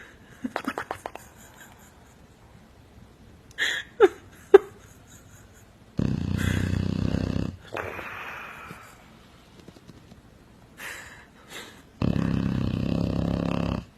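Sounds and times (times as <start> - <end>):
loud rattling snoring: 6.0 - 7.6, 12.0 - 13.9.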